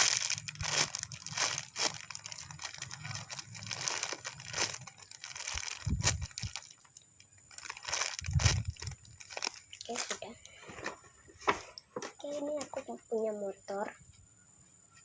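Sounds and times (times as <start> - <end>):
packaging rustling and crackling: 0.0 - 11.7.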